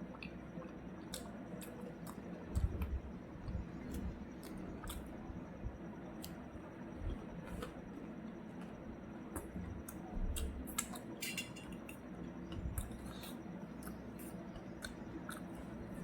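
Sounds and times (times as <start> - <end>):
cutlery clinking against dishes: 11.2 - 11.9.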